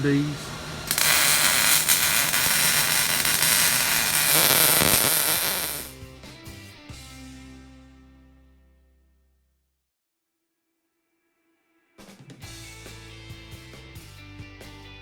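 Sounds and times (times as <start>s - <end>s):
loud steady hiss: 0.0s - 5.9s.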